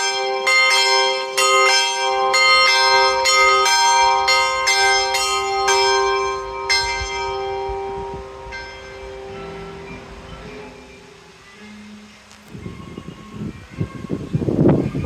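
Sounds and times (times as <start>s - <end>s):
clock tower bells ringing: 0.0s - 15.0s.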